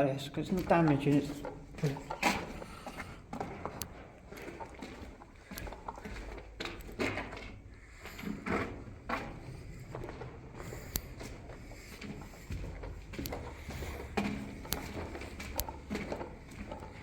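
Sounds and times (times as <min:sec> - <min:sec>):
footsteps: 0:00.0 - 0:17.0.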